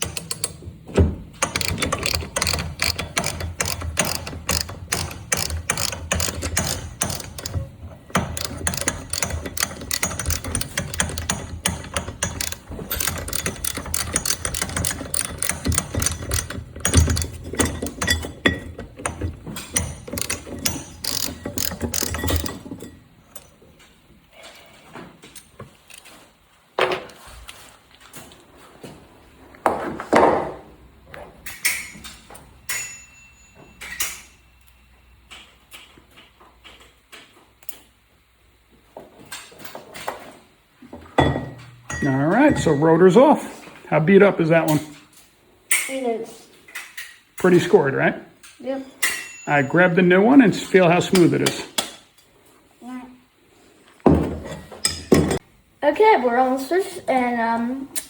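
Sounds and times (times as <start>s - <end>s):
ratchet wrench clicking: 1.4s - 23.5s.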